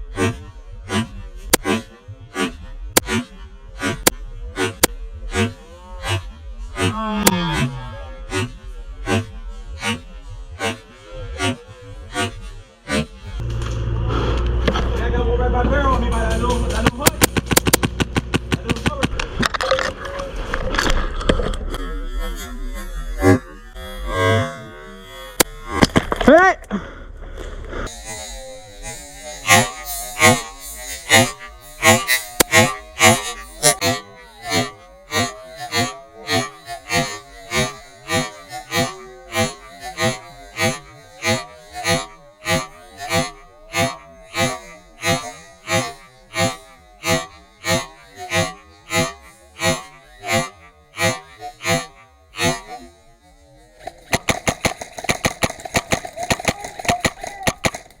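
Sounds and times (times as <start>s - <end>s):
fast busy rhythm: 53.9s - 58.0s.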